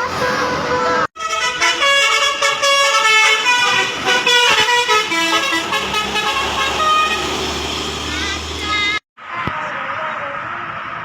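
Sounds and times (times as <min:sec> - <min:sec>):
musical air horn playing a tune: 0:00.1 - 0:07.3
engine rumble: 0:03.3 - 0:10.3.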